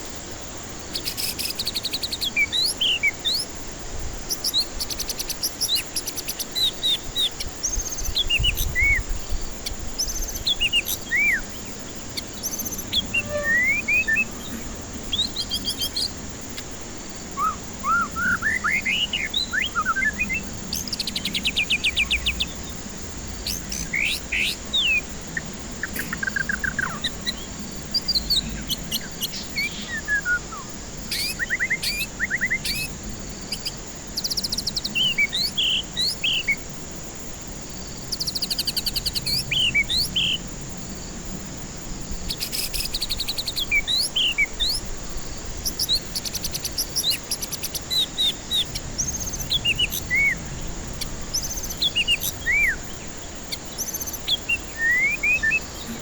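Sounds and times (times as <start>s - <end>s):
bird singing whistled phrases: 10.0s - 16.2s, 17.3s - 22.6s, 23.5s - 25.0s, 25.8s - 32.9s, 51.3s - 53.0s, 53.6s - 56.0s.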